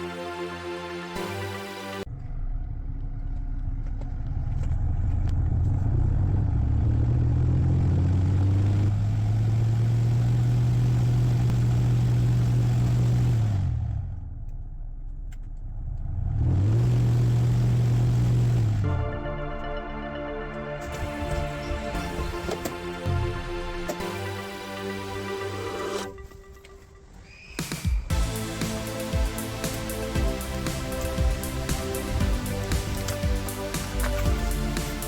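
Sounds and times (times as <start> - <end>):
blower motor humming: 28.1 - 35.0.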